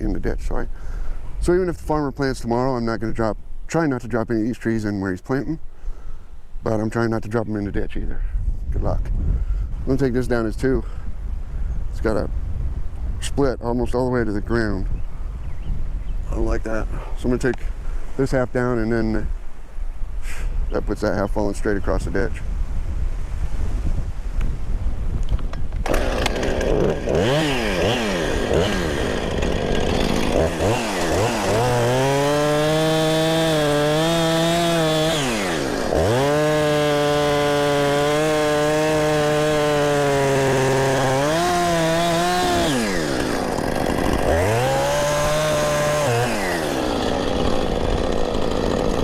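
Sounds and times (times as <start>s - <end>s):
chainsaw revving and cutting: 25.8s - 49.0s.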